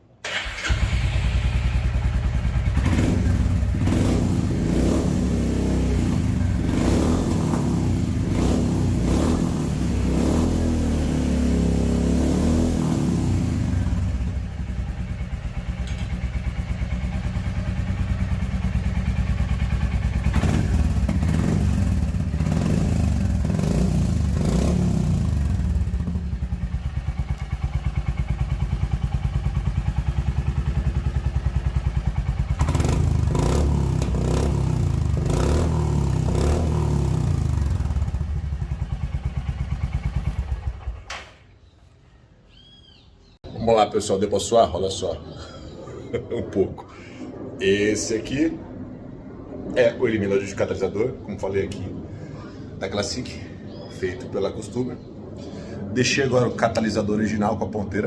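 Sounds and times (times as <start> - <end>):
motorcycle engine idling and revving: 0.3 - 41.4.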